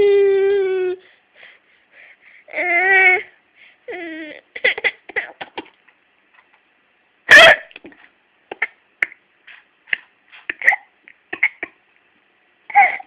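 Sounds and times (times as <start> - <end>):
small child hiccuping: 7.3 - 7.8, 10.5 - 11.8, 12.7 - 13.0.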